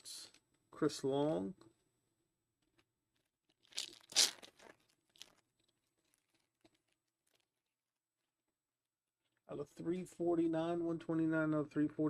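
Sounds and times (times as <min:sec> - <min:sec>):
foil crinkling: 0:03.6 - 0:05.4
foil wrapper tearing: 0:03.6 - 0:05.4.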